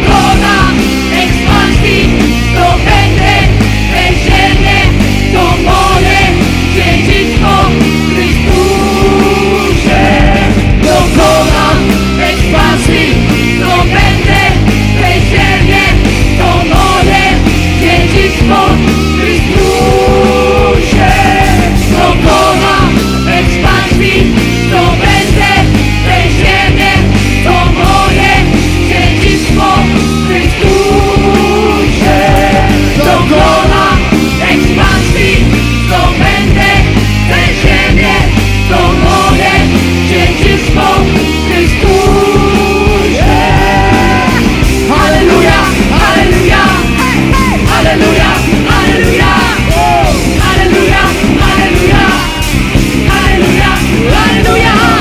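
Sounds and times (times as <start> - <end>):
rock worship band music: 0.0 - 55.0
voices singing: 0.0 - 55.0.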